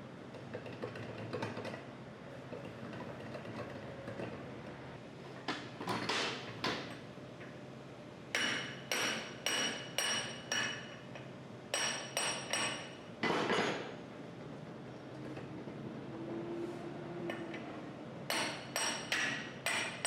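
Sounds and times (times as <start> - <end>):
hammer tapping on steel: 8.4 - 10.8, 18.3 - 20.0.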